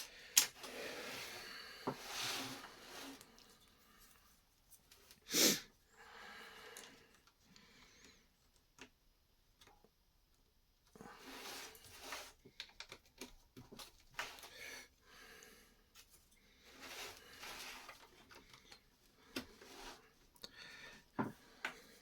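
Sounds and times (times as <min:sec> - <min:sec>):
plastic pieces clicking and rustling: 0:00.0 - 0:00.8, 0:12.5 - 0:14.4
short loud breath-like hiss: 0:05.3 - 0:05.7.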